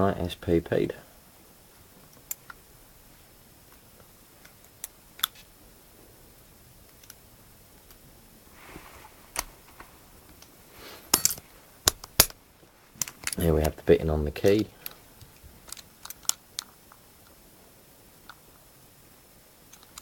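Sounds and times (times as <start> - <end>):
rustle: 0.0 - 20.0
handling lock-picking tools: 11.1 - 12.4, 13.0 - 13.8, 14.4 - 16.8
padlock metallic clicks: 11.1 - 12.4, 15.6 - 16.8.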